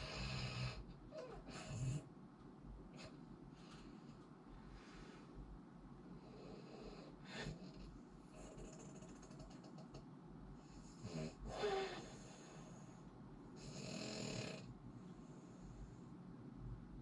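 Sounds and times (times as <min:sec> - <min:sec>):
person snoring: 0:11.0 - 0:12.7, 0:13.6 - 0:14.7.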